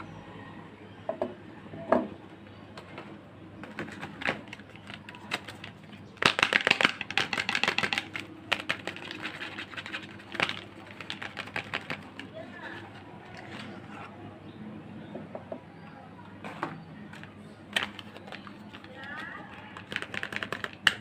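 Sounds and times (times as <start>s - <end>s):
packaging taps and clicks: 3.6s - 13.8s, 17.1s - 21.0s
packaging crinkling: 3.6s - 14.0s, 17.2s - 21.0s.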